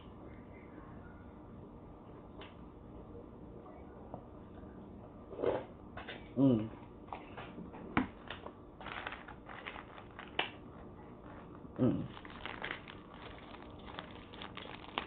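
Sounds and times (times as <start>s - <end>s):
hum-like voice sound: 6.3s - 6.8s, 11.0s - 12.2s
paper wrapper crinkling: 8.8s - 10.6s, 11.2s - 15.0s.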